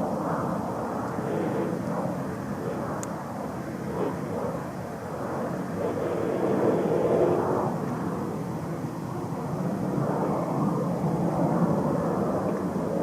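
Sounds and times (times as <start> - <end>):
jet engines rumbling: 0.0 - 13.0.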